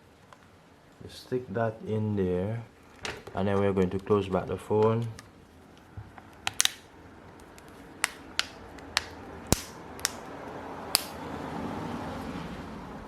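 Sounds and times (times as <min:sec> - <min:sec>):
sharp plastic clicks and taps: 0:08.0 - 0:10.2.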